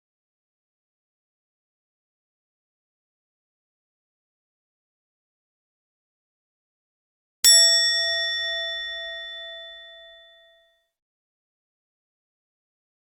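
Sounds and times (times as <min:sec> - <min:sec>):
bell-like ding: 0:07.4 - 0:10.9.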